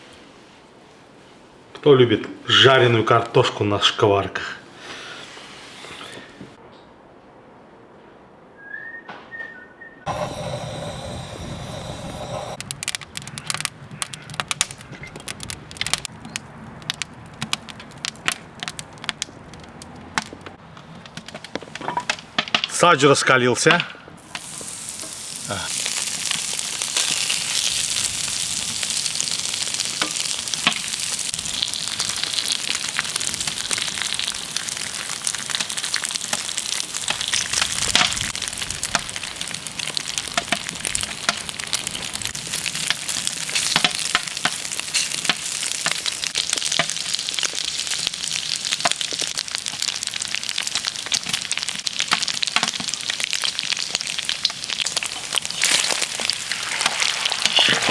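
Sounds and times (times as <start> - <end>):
fat sizzling on griddle: 10.1 - 19.2, 24.2 - 57.9
crackling pops: 10.1 - 22.8, 23.6 - 57.9.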